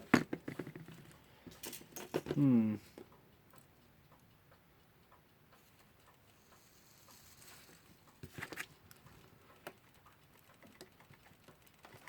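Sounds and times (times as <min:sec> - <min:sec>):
screwdriver clicking on clock movement: 0:03.0 - 0:12.0.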